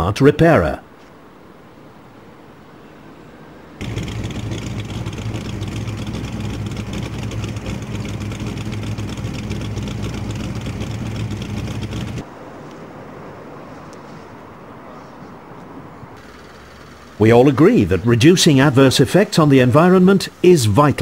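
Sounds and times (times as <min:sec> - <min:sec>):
mechanical running noise: 0:03.8 - 0:12.2, 0:16.2 - 0:17.2.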